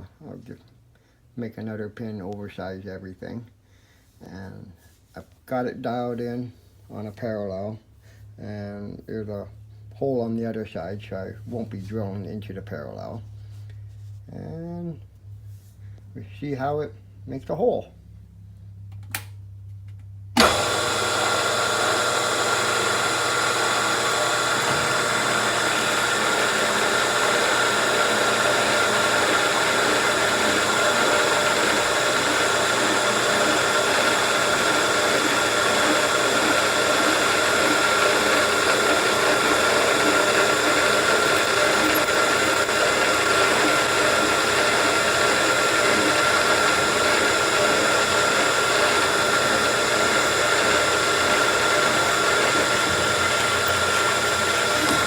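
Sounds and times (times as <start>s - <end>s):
milling machine whining: 20.4s - 55.0s.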